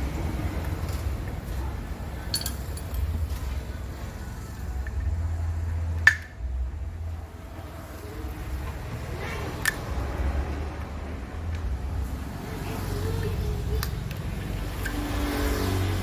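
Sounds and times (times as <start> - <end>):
steady low rumble: 0.0 - 16.0
sharp metal clink: 2.2 - 3.1
metal tools clicking: 2.2 - 3.7, 12.8 - 16.0.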